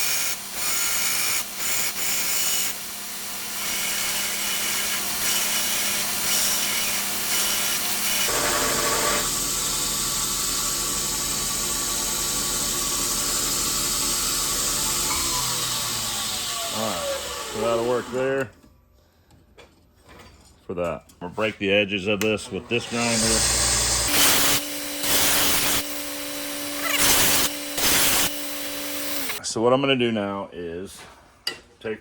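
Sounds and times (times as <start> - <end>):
belt grinder grinding steel: 0.0 - 18.4, 22.3 - 29.4
machine hum: 22.5 - 29.4.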